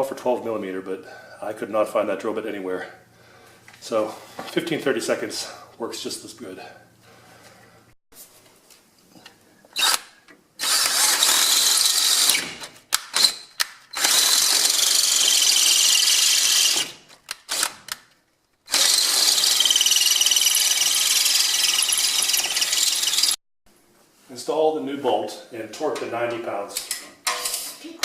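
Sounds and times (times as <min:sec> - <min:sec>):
power drill boring into steel: 0:09.8 - 0:10.0, 0:10.6 - 0:12.5, 0:13.9 - 0:17.8, 0:18.7 - 0:23.4
drill bit squealing: 0:18.7 - 0:23.4.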